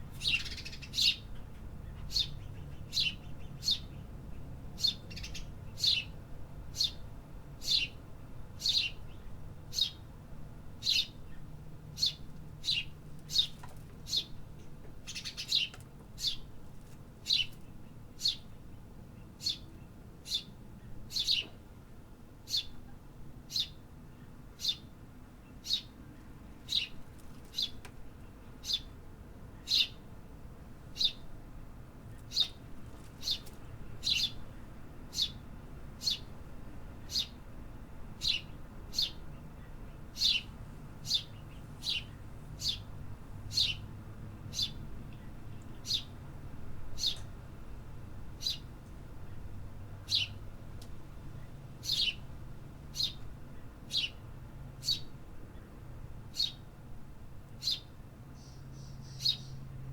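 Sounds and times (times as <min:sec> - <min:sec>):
bird chirping: 0:00.1 - 0:06.2, 0:06.8 - 0:07.0, 0:07.6 - 0:08.0, 0:08.6 - 0:10.0, 0:10.8 - 0:14.4, 0:15.0 - 0:16.5, 0:17.2 - 0:18.5, 0:19.2 - 0:21.5, 0:22.5 - 0:22.8, 0:23.5 - 0:24.8, 0:25.4 - 0:26.0, 0:26.6 - 0:28.9, 0:29.6 - 0:30.0, 0:31.0 - 0:31.2, 0:32.1 - 0:32.6, 0:33.2 - 0:34.4, 0:35.1 - 0:35.4, 0:36.0 - 0:36.3, 0:37.0 - 0:37.4, 0:38.2 - 0:42.9, 0:43.5 - 0:43.9, 0:44.5 - 0:46.2, 0:47.0 - 0:47.3, 0:48.4 - 0:48.7, 0:50.1 - 0:50.4, 0:51.4 - 0:52.2, 0:52.9 - 0:54.2, 0:54.8 - 0:55.7, 0:56.3 - 0:56.6, 0:57.6 - 0:59.7.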